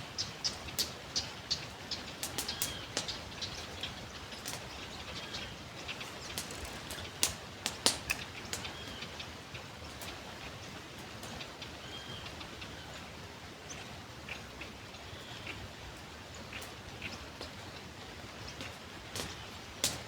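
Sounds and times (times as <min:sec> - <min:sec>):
small birds chirping: 0:00.0 - 0:20.0
steady outdoor hiss: 0:00.0 - 0:20.0
sharp ticks: 0:06.0 - 0:08.7.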